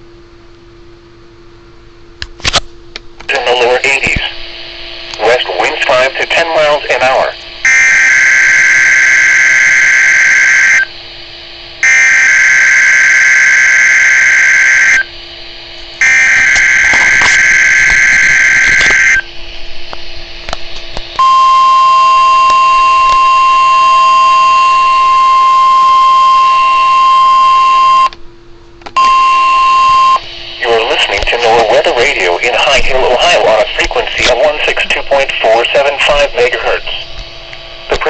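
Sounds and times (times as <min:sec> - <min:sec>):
steady warning alarm tone: 0:03.3 - 0:28.2, 0:29.0 - 0:38.0
screeching digital header bursts: 0:05.2 - 0:10.9, 0:11.8 - 0:15.0, 0:16.0 - 0:19.2.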